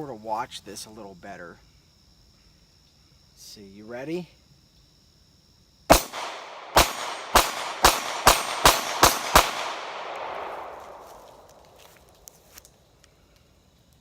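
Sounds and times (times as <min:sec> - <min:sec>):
gunshot echo: 0:05.9 - 0:11.7
pistol shots: 0:05.9 - 0:11.7.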